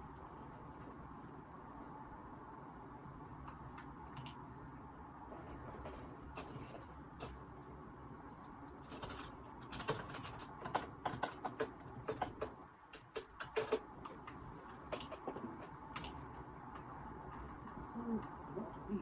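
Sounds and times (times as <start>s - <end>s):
keyboard typing: 5.8s - 7.6s, 8.7s - 18.7s.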